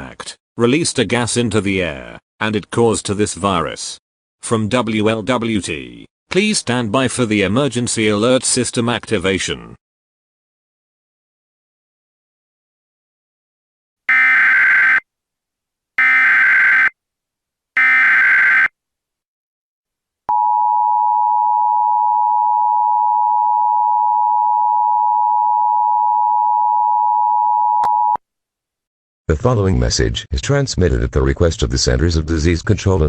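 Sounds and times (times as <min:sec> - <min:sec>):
harsh electronic data screech: 0:14.1 - 0:15.0, 0:16.0 - 0:16.9, 0:17.8 - 0:18.7.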